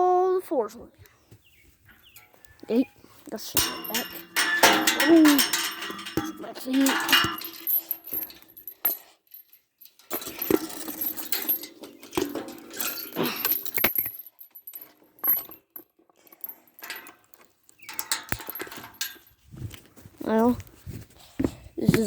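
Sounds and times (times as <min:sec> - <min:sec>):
metallic clinking and rattling: 0:03.4 - 0:19.9.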